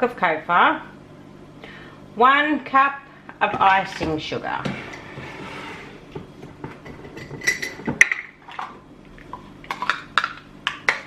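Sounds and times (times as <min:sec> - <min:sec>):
kitchenware clinking and knocking: 0:06.6 - 0:08.7.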